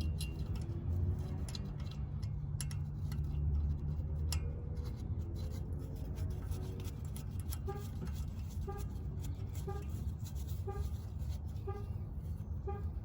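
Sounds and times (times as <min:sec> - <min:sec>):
light metal clicks: 0:00.0 - 0:05.1.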